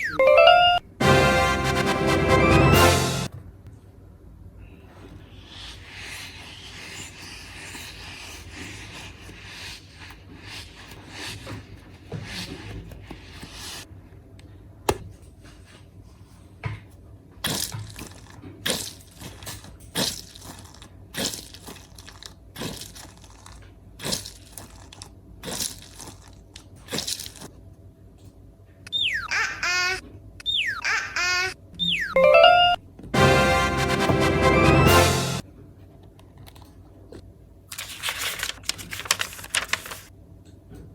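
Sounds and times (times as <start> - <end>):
slime squelching: 5.2 - 13.9, 17.4 - 27.6
falling warbling whistle effect: 31.8 - 32.4.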